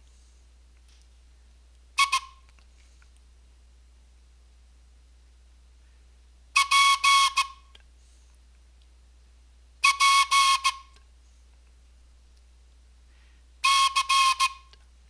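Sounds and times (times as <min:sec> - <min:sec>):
whistle blasts: 0:02.0 - 0:02.4, 0:06.6 - 0:07.7, 0:09.8 - 0:10.9, 0:13.6 - 0:14.8.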